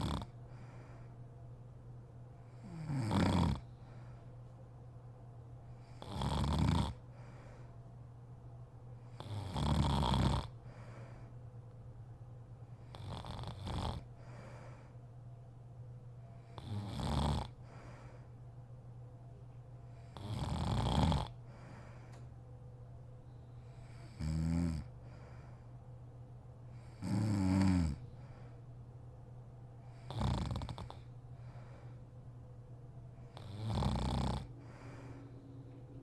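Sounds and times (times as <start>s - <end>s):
woman snoring: 0.0s - 0.3s, 2.6s - 3.6s, 6.0s - 7.0s, 9.2s - 10.6s, 12.9s - 14.1s, 16.6s - 17.6s, 20.2s - 21.4s, 24.0s - 24.9s, 27.0s - 28.0s, 30.0s - 31.0s, 33.4s - 35.1s
steady low hum: 0.0s - 36.0s.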